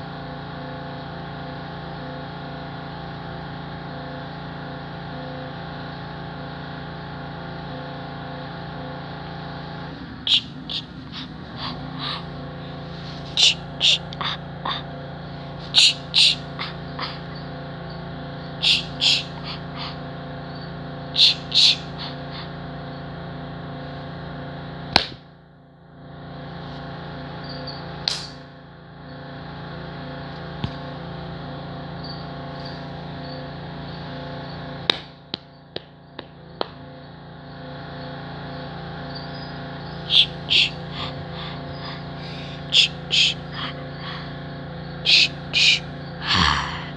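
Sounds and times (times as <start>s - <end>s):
steady electrical hum: 0.0s - 46.9s
person making hissing mouth noises: 10.3s - 17.4s, 18.5s - 20.1s, 21.2s - 22.6s, 40.0s - 46.9s.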